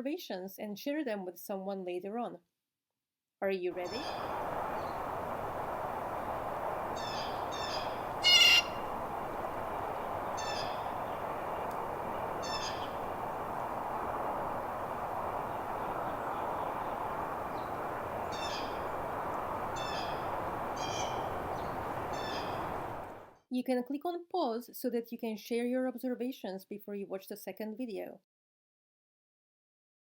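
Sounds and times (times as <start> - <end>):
steady background hiss: 3.8 - 23.3
bird harsh calls: 3.9 - 5.0, 7.0 - 9.0, 9.9 - 11.2, 12.4 - 13.0, 17.6 - 19.0, 19.8 - 22.8.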